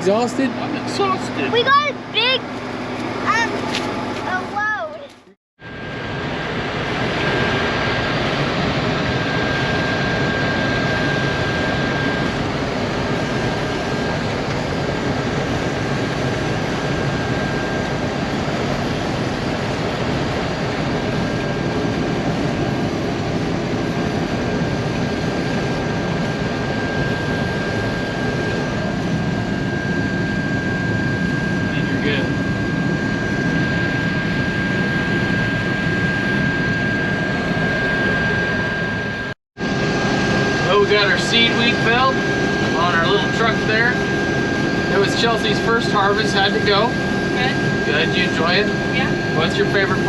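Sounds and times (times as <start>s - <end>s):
thin high whine: 26.3s - 50.0s.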